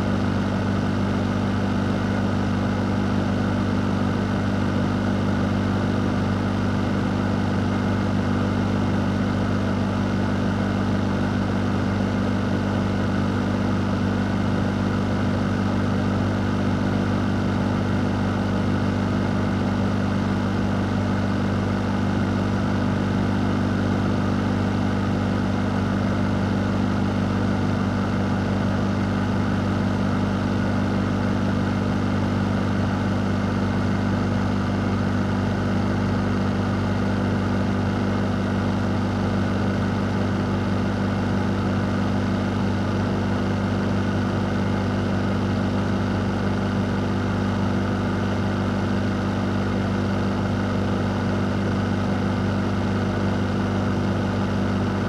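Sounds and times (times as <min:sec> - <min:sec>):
fan running: 0:00.0 - 0:55.0.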